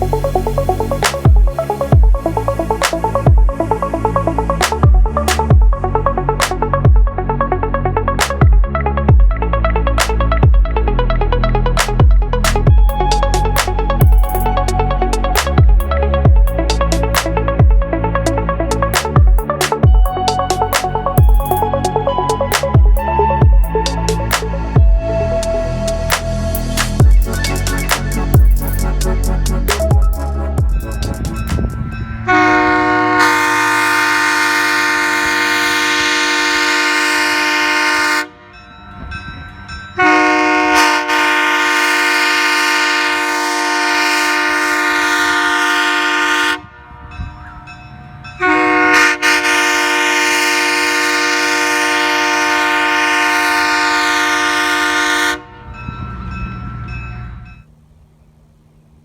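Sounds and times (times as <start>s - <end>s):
train horn chord blasts: 32.2s - 38.6s, 40.0s - 47.0s, 48.4s - 57.6s.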